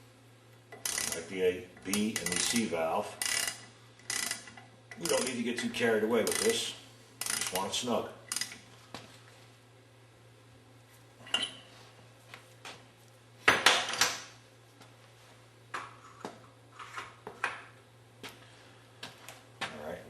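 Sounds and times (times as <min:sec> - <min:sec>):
metal tools clinking and clanking: 0:11.2 - 0:11.7.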